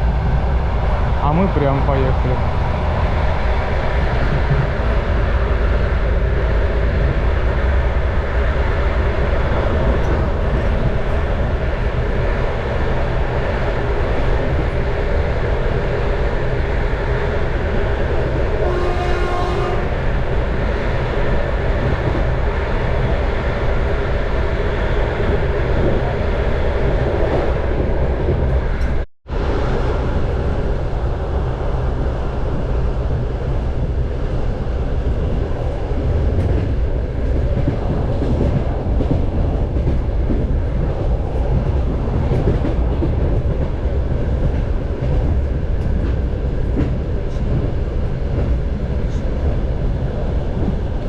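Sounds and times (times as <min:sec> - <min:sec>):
train wheels and engine rumbling: 0:00.0 - 0:51.0
train horn blast: 0:18.6 - 0:19.9.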